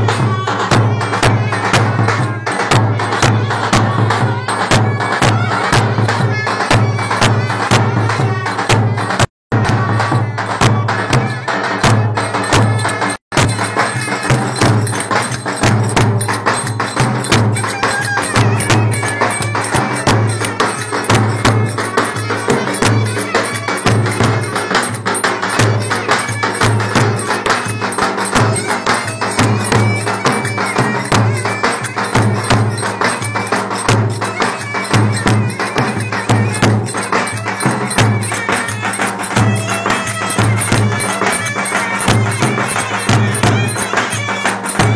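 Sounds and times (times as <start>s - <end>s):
pulsing drum beat: 0.0s - 44.9s
clarinets playing dance music: 11.1s - 44.9s.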